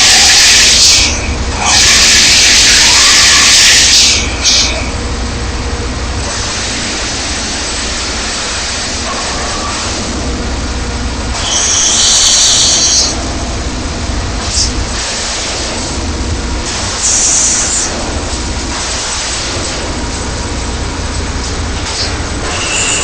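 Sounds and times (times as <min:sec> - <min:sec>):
harsh high-pitched noise: 0:00.0 - 0:04.9, 0:11.4 - 0:13.2.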